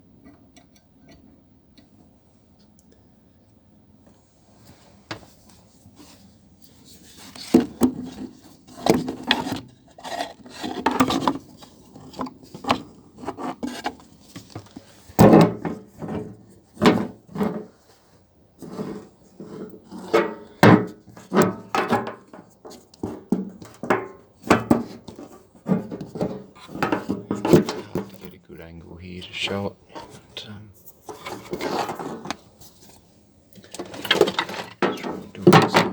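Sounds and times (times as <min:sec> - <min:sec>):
wood scraping and knocking: 0:07.2 - 0:17.7, 0:18.6 - 0:28.4, 0:31.1 - 0:33.0, 0:33.6 - 0:35.9.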